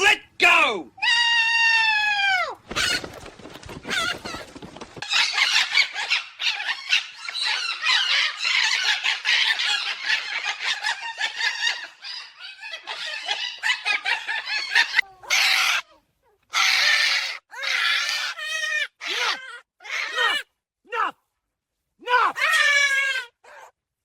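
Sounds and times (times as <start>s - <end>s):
cockatoo screeching: 1.0s - 3.2s, 3.8s - 20.5s, 22.1s - 23.7s.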